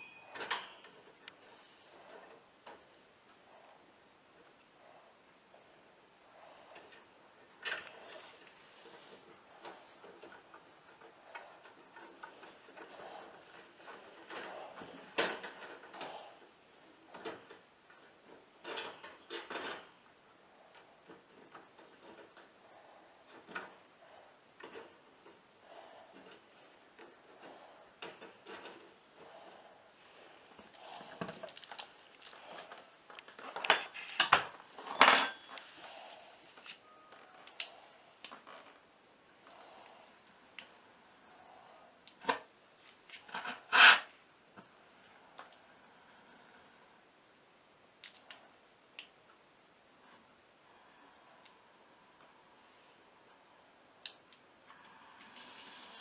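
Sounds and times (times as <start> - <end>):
tools clicking and tapping: 0.0 - 1.4.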